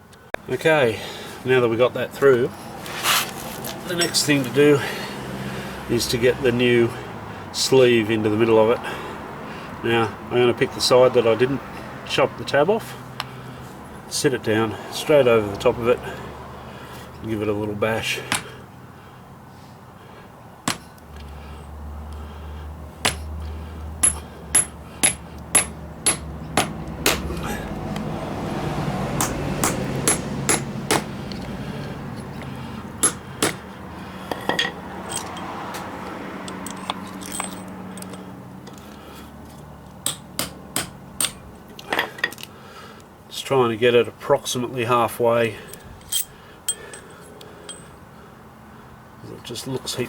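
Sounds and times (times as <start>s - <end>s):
hammer striking metal: 24.0s - 27.4s, 29.2s - 31.1s, 33.0s - 33.6s, 40.0s - 41.4s.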